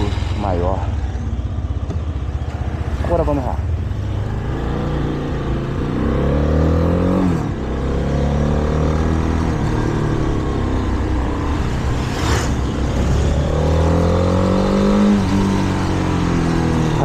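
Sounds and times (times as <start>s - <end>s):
motorcycle engine accelerating: 0.0s - 17.0s
short rush of noise: 11.7s - 13.3s.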